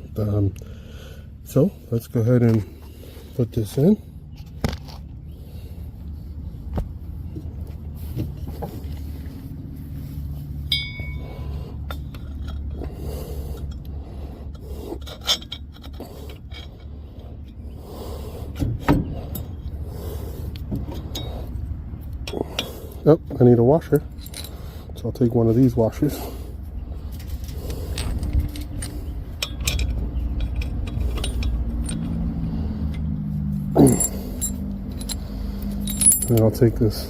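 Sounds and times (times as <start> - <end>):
steady low hum: 0.0 - 37.0
metal tools scraping and clinking: 10.6 - 17.6, 20.8 - 23.0, 23.6 - 26.1, 27.0 - 37.0
ringing metal clink: 10.7 - 11.5, 33.8 - 36.6.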